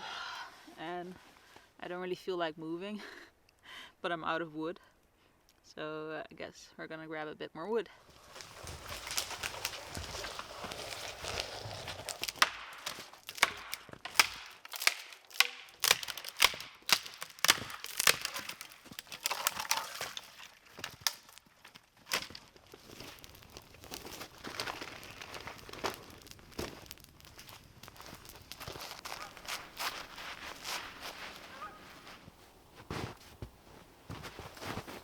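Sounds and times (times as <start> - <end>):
dry sticks snapping: 8.1 - 32.3.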